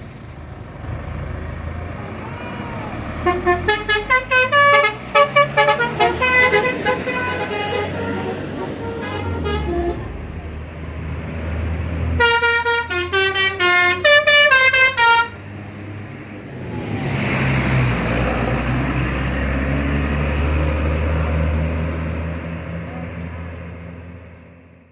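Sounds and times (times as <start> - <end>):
musical air horn tune: 3.2 - 10.2, 12.2 - 15.4.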